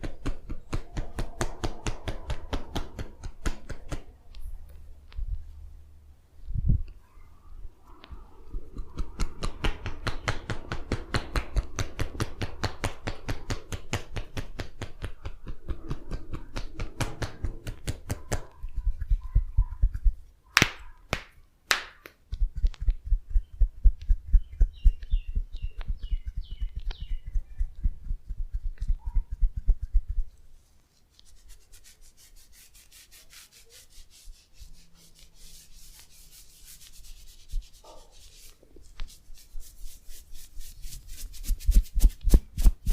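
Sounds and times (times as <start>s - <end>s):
hands patting and slapping body: 0.0s - 4.1s, 8.7s - 30.4s, 41.0s - 42.9s
sharp snaps: 8.0s - 19.1s, 19.8s - 30.4s
faint rubbing: 27.2s - 42.9s.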